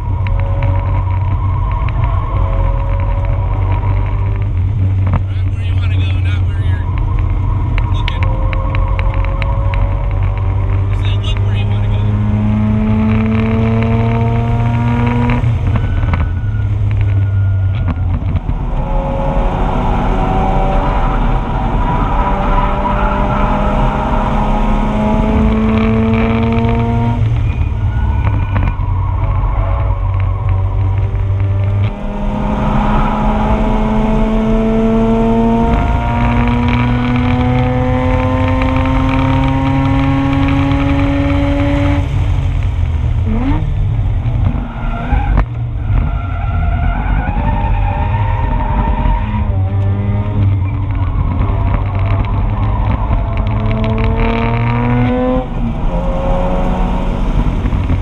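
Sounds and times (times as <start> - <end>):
rotary engine at full throttle: 7.6 - 16.6, 18.2 - 28.8, 30.5 - 44.6, 48.2 - 58.0.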